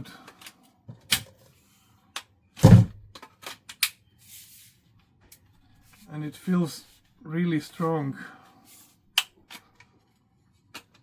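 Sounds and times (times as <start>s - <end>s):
plastic parts clicking and knocking: 2.1s - 4.0s, 9.1s - 10.0s, 10.6s - 11.0s
heavy plastic clunk: 2.6s - 3.1s.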